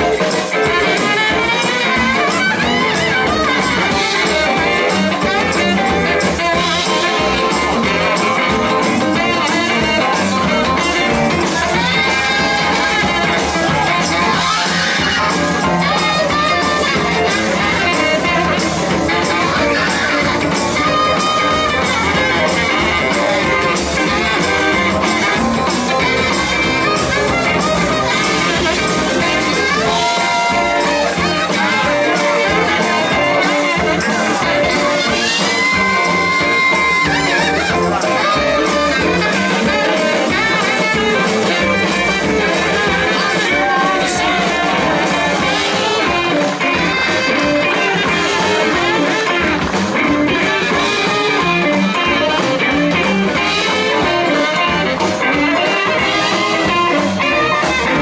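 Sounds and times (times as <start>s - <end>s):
blues band playing live: 0.0s - 58.0s.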